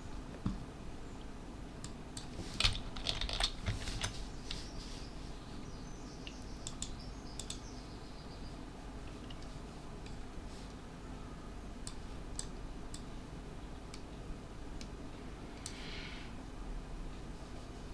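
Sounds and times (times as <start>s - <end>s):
computer keyboard typing: 2.2s - 4.2s.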